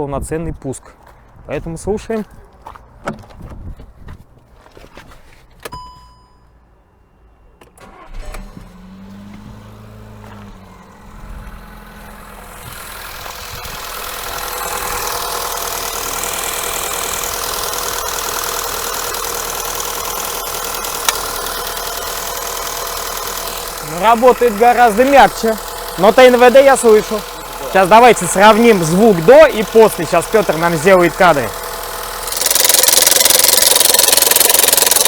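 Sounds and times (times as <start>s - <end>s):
car engine idling: 7.0s - 35.0s
fuel pump whirring: 7.6s - 35.0s
starter clicks: 13.3s - 35.0s.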